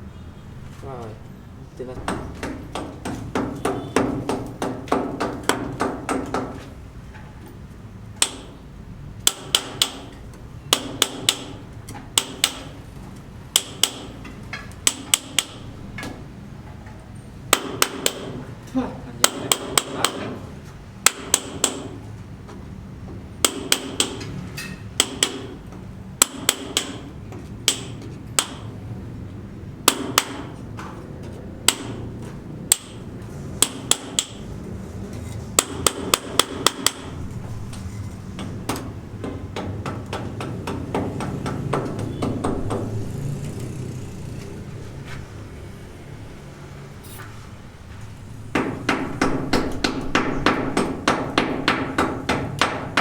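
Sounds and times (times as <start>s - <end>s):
hammer blows ringing: 2.0s - 6.6s, 9.2s - 11.6s, 17.5s - 18.5s, 29.8s - 30.6s, 38.4s - 43.2s.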